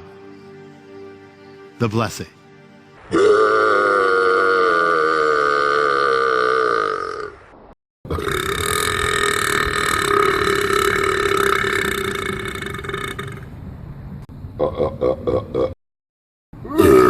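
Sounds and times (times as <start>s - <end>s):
long drawn-out burp: 3.1s - 7.4s, 8.1s - 13.5s, 16.6s - 17.0s.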